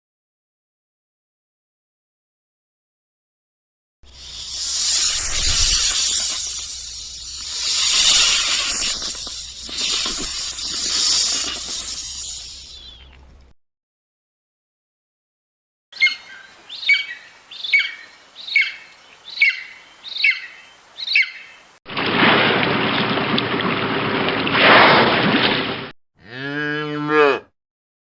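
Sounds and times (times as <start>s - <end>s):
loud harsh hissing noise: 4.0s - 13.0s
bird downward-sweeping calls: 16.0s - 21.6s
cow mooing: 26.2s - 27.5s.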